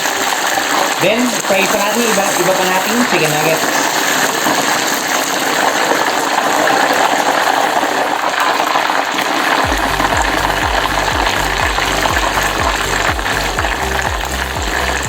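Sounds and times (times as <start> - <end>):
food frying in hot oil: 0.0 - 15.0
music with deep bass beat: 9.6 - 15.0.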